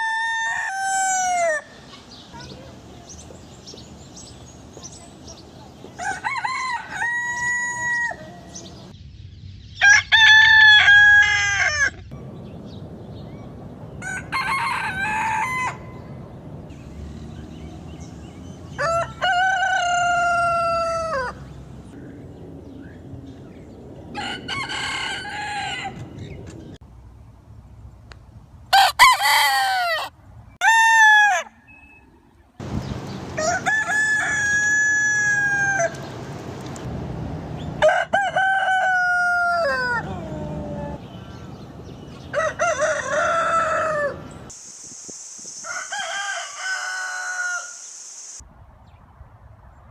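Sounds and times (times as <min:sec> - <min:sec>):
roosters crowing: 0:00.0 - 0:01.8, 0:06.0 - 0:08.9, 0:09.8 - 0:12.1, 0:13.9 - 0:16.1, 0:17.6 - 0:21.6, 0:24.1 - 0:26.3, 0:28.7 - 0:31.8, 0:33.2 - 0:36.2, 0:37.8 - 0:44.5, 0:45.6 - 0:47.8.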